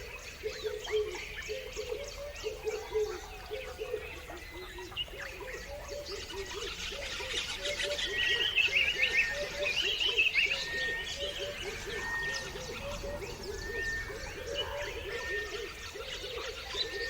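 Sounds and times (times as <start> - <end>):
bird warbling song: 0.0 - 17.0
birds chirping: 0.0 - 17.0.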